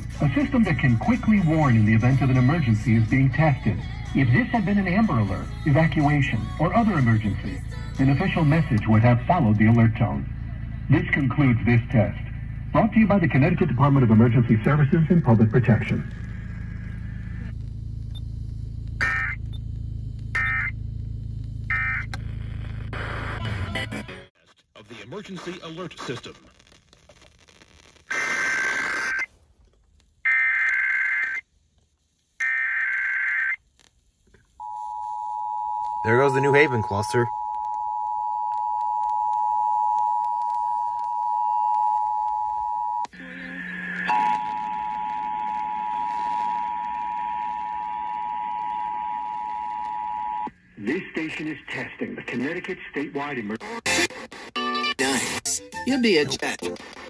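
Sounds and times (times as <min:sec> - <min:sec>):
low radio hum: 0:00.0 - 0:57.0
low buzzing: 0:10.0 - 0:23.8
screeching digital data tones: 0:19.0 - 0:19.5, 0:20.3 - 0:20.8, 0:28.1 - 0:29.3
two-tone alarm: 0:19.0 - 0:19.5, 0:20.3 - 0:20.8, 0:21.7 - 0:22.1, 0:34.6 - 0:43.1, 0:43.7 - 0:50.5.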